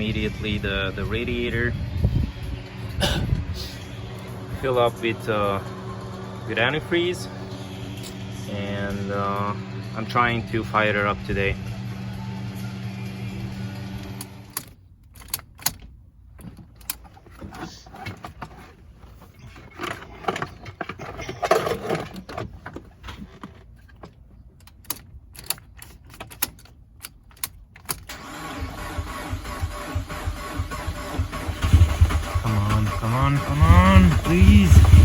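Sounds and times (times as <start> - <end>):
rattling clatter of car parts: 2.0 - 10.8, 14.5 - 35.0
tools clicking and clinking: 14.2 - 17.2, 24.6 - 28.1.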